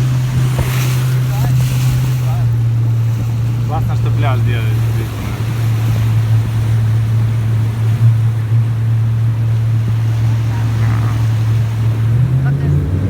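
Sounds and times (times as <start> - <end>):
boat motor humming: 0.0 - 13.0
wind on microphone: 0.0 - 13.0.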